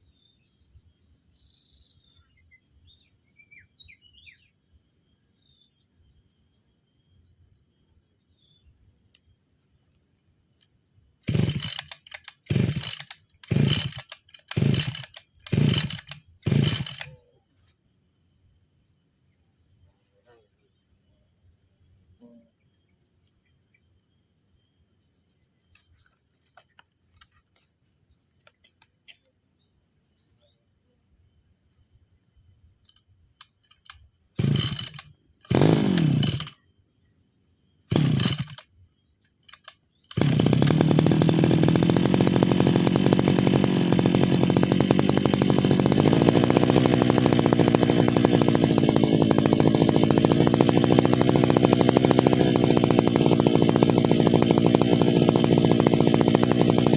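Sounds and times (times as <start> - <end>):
brushcutter petrol engine starting: 11.2 - 17.2, 32.9 - 36.6, 37.9 - 38.7, 39.4 - 56.9.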